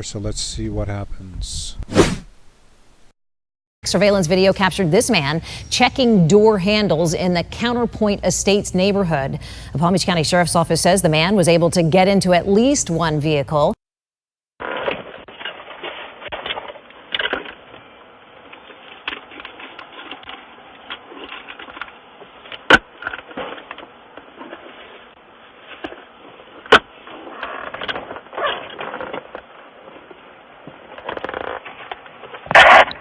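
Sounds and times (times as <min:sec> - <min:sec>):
faint outdoor background noise: 0:00.0 - 0:03.1, 0:03.8 - 0:13.8, 0:14.7 - 0:33.0
rustles: 0:14.6 - 0:33.0.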